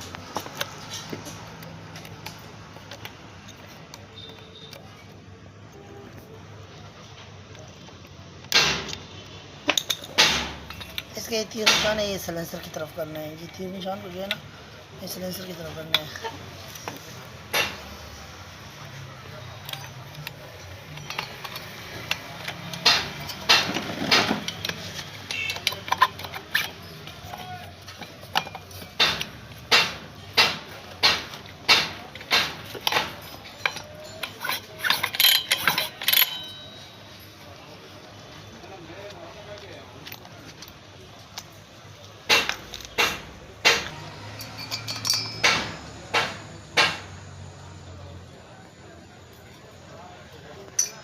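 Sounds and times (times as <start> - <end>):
small metal clicks and knocks: 0.0 - 37.2, 39.0 - 47.2, 50.6 - 51.0
sharp metallic knocks: 9.8 - 10.9, 20.9 - 26.9, 28.3 - 34.0, 42.3 - 47.4
light ringing metal clinks: 33.2 - 37.0, 44.2 - 46.0.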